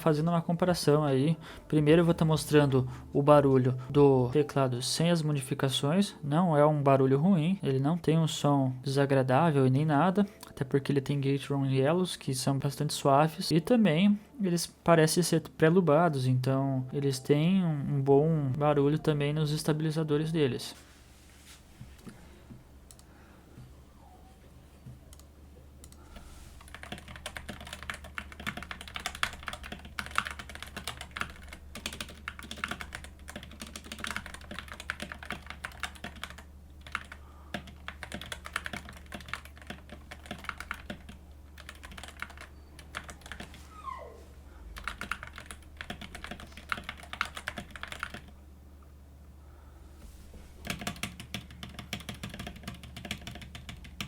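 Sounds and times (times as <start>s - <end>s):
mechanical keyboard typing: 26.6s - 43.5s, 44.8s - 48.3s, 50.6s - 54.0s.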